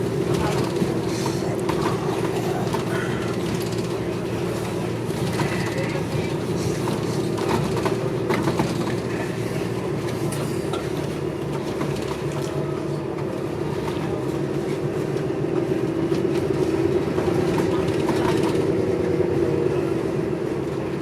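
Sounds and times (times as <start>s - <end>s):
bus body rattling: 0.0s - 19.2s
bus engine drone: 0.0s - 21.0s.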